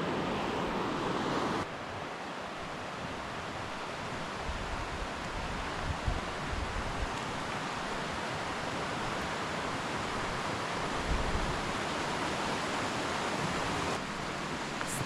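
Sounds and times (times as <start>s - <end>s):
wind buffeting microphone: 4.4s - 7.1s.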